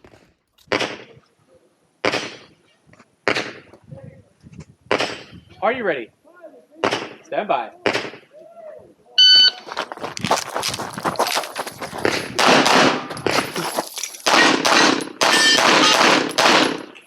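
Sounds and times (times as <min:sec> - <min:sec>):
handgun shots: 0:12.3 - 0:13.5, 0:14.2 - 0:17.0.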